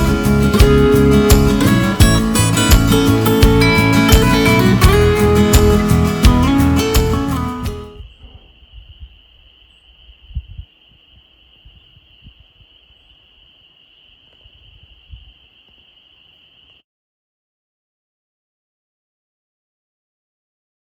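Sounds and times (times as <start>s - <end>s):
acoustic guitar music: 0.0s - 8.0s
faint low thumps: 0.0s - 9.2s.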